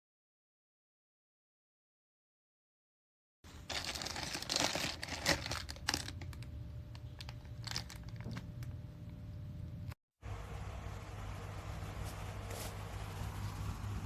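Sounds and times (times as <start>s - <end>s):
crinkling and rustling: 3.5s - 8.9s, 11.8s - 14.0s.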